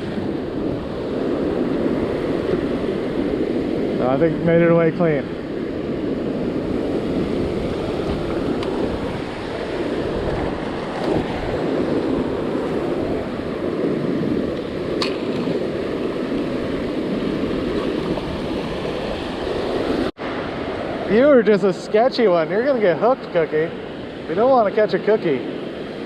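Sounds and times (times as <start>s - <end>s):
wind on microphone: 0.0s - 22.9s
ocean surf washing onto beach: 0.0s - 26.0s.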